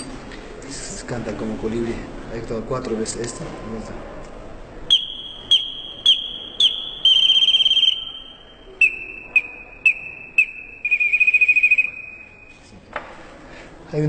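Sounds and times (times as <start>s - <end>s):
whistle chirps and trills: 4.9s - 12.6s.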